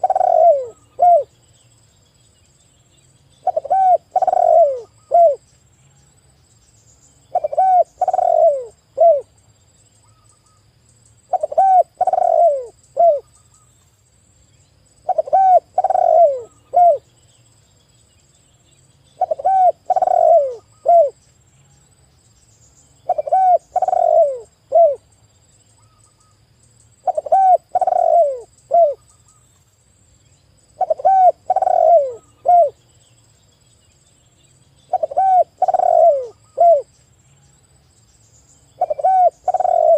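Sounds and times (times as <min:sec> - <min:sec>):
dove cooing: 0:00.0 - 0:01.3, 0:03.4 - 0:05.4, 0:07.3 - 0:09.3, 0:11.3 - 0:13.3, 0:15.0 - 0:17.1, 0:19.2 - 0:21.2, 0:23.0 - 0:25.1, 0:27.0 - 0:29.0, 0:30.8 - 0:32.8, 0:34.9 - 0:36.9, 0:38.8 - 0:39.9.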